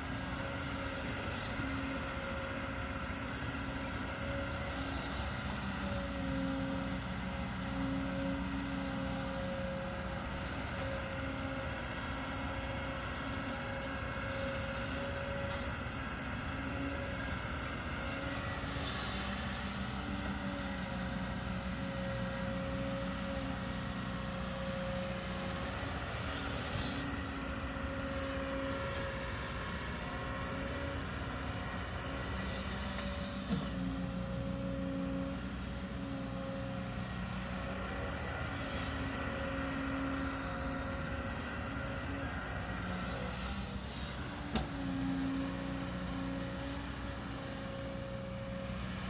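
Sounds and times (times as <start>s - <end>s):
excavator diesel engine running: 0.0s - 49.0s.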